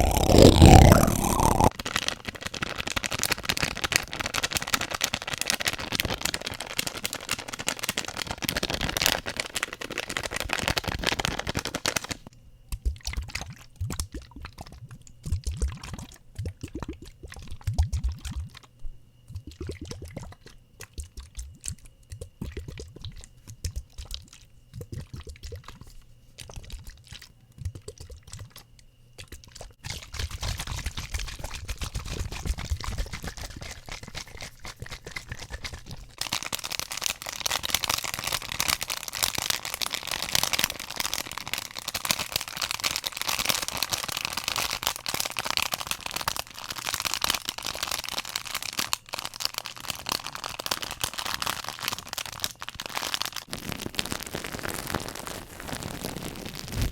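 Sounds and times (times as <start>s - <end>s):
crackling hissing noise: 0.0s - 12.3s, 50.8s - 56.9s.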